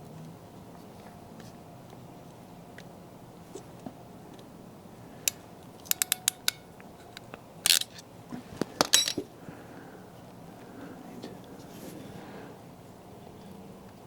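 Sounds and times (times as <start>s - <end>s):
wire tools snipping and clicking: 5.3s - 9.2s.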